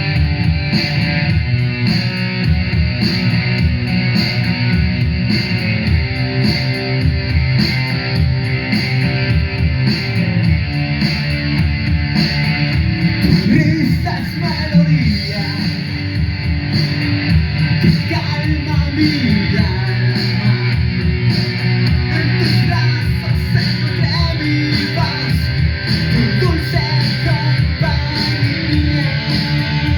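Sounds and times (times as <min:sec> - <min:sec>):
rock music with electric guitar: 0:00.0 - 0:29.9
person singing: 0:13.1 - 0:16.2, 0:17.7 - 0:29.9.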